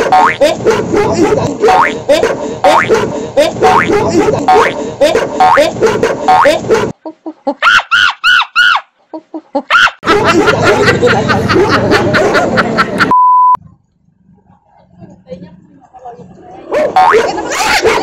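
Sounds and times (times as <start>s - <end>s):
jumbled noise and voices: 0.0s - 7.0s, 14.2s - 18.0s
steady high beep: 13.1s - 13.6s.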